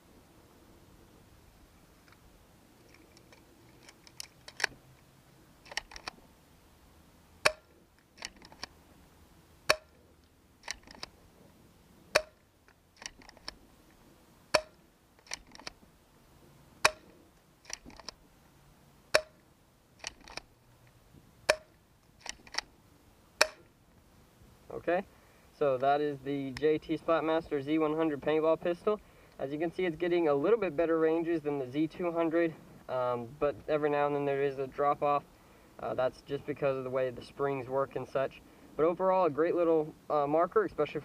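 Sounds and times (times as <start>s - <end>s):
quiet clicks: 2.9s - 6.2s, 9.7s - 11.1s
paintball pistol firing: 7.4s - 7.8s, 9.7s - 10.0s, 12.1s - 12.4s, 14.5s - 14.8s, 16.8s - 17.1s, 19.1s - 19.4s, 21.5s - 21.8s, 23.4s - 23.7s.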